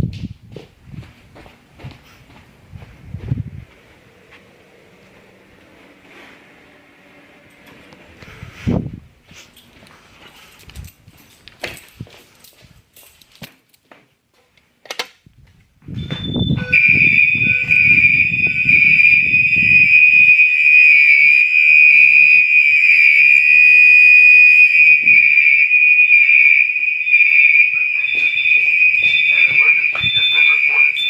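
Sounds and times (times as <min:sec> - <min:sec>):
fire alarm high-pitched tone: 0:04.3 - 0:08.8, 0:15.9 - 0:31.0.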